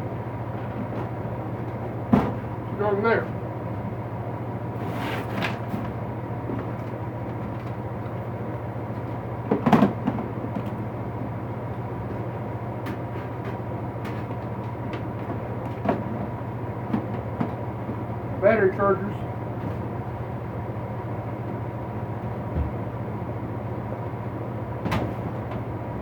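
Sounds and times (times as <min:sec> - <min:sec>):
items knocking and clattering: 0:09.5 - 0:10.7.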